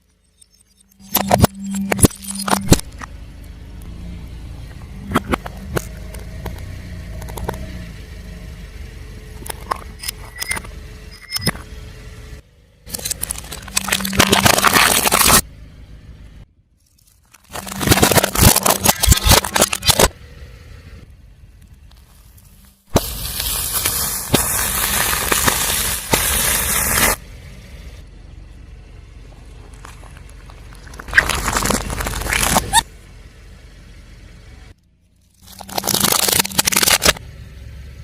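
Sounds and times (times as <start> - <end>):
tyre crushing crunchy objects: 12.9 - 15.4, 17.1 - 20.1, 21.8 - 27.2, 29.5 - 32.8, 35.4 - 37.2.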